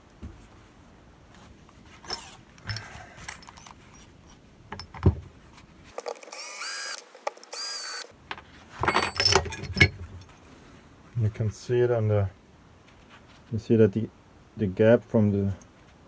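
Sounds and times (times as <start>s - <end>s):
light metal knocks and clicks: 4.7s - 5.3s, 8.2s - 10.4s
cordless drill motor whine: 6.2s - 8.1s.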